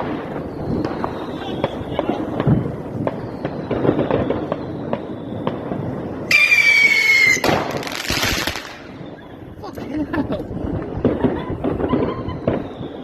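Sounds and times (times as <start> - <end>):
loud firework hiss: 0.0 - 9.0
firework whistle: 0.0 - 9.6, 11.5 - 13.0
fireworks crackling and popping: 0.0 - 13.0.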